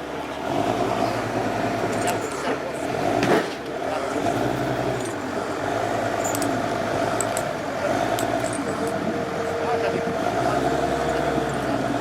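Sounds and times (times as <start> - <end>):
diesel engine running: 0.0 - 12.0
metallic clinks and rattles: 5.0 - 5.3, 6.1 - 6.6, 8.2 - 9.0.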